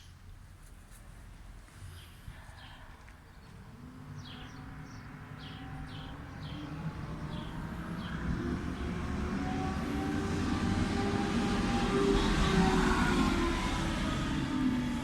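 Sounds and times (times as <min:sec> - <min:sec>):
bird chirping: 0:04.2 - 0:08.9.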